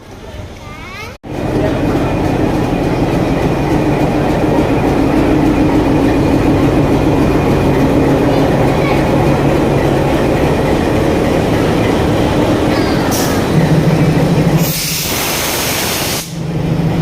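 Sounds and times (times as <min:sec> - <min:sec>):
train carriages rumbling on track: 0:00.0 - 0:17.0
burst of hiss: 0:14.6 - 0:16.4.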